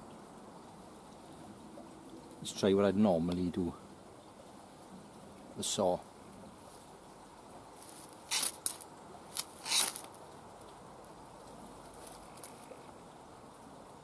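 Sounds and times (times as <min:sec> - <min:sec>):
ferro rod scraping: 0:07.8 - 0:08.8, 0:09.4 - 0:10.2.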